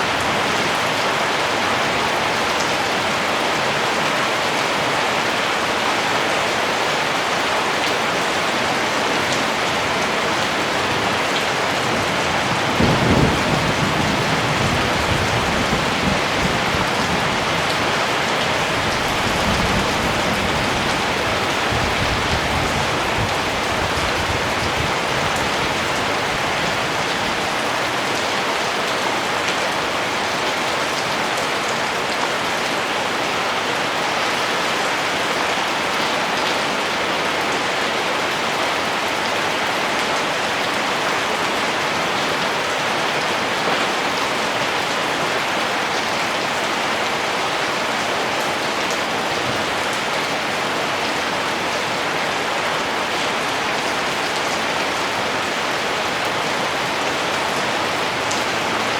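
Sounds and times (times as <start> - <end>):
steady rain falling: 0.0 - 58.9
thunder rumbling: 11.8 - 26.4.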